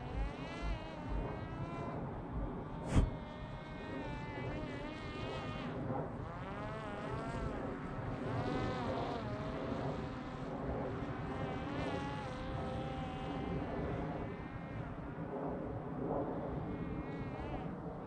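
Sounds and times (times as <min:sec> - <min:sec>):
drone propeller buzzing: 0:00.0 - 0:15.0.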